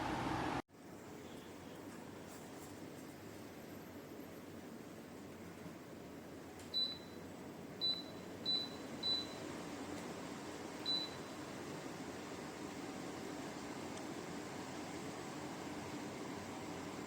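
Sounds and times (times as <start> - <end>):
fan blowing air: 0.0 - 1.1, 4.5 - 17.0.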